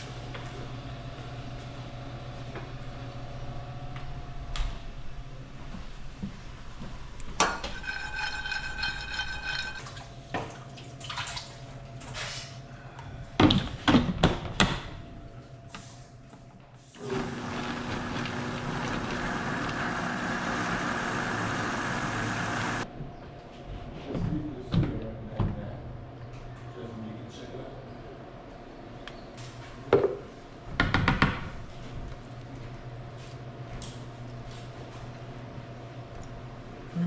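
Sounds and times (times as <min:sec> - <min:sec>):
food processor blending: 0:17.0 - 0:22.8.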